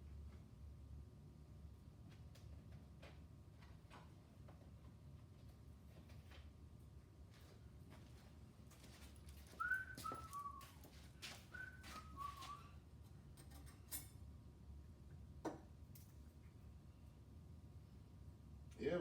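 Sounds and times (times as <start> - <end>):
person whistling falling phrase: 9.6 - 10.7, 11.6 - 12.7
clicks and knocks of tools: 13.3 - 14.2.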